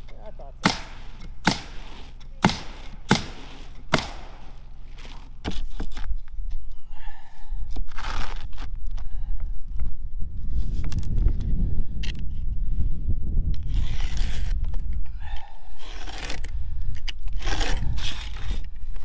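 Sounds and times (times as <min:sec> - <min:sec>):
nail gun firing: 0:00.6 - 0:04.5
wind rumble on microphone: 0:05.6 - 0:19.0.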